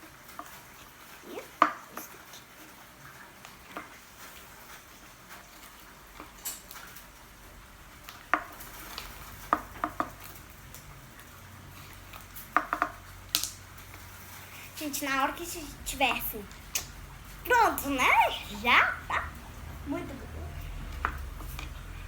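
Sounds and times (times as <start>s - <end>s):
spoon stirring slime in a pot: 8.0s - 16.1s.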